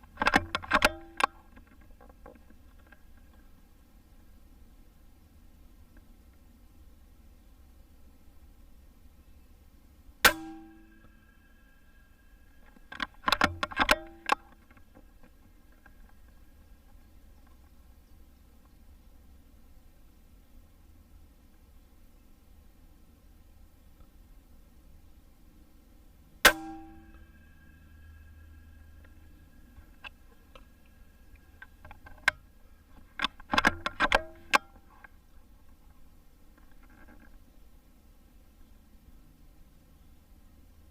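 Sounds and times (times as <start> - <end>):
sharp metallic clicks: 0.0 - 3.4, 12.5 - 17.6, 26.4 - 35.2
mechanical click: 0.2 - 1.4, 12.6 - 14.8, 33.2 - 34.7
air rifle shot: 10.2 - 11.0, 26.4 - 27.2
air rifle bolt clacking: 12.6 - 14.9, 33.1 - 34.9.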